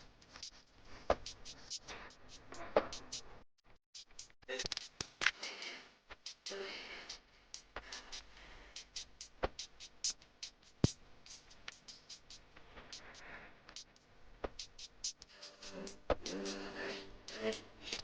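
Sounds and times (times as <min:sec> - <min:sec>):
sparse percussive beat: 0:06.2 - 0:13.9.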